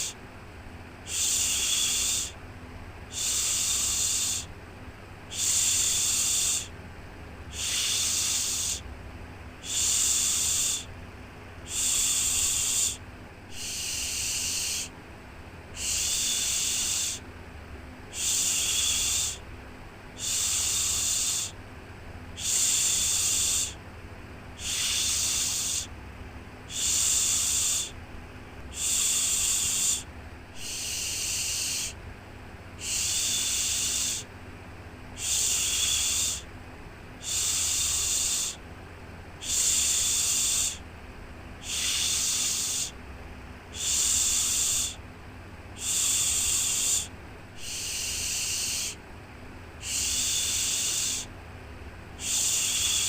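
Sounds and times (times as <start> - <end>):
faint low hum: 0.0 - 53.0
person shushing: 11.7 - 14.9, 24.6 - 25.9, 26.7 - 28.0, 28.7 - 32.0, 32.8 - 34.3, 35.2 - 36.5, 37.2 - 38.6, 39.4 - 40.8, 41.6 - 43.0, 45.8 - 49.0, 49.8 - 51.3, 52.2 - 53.0.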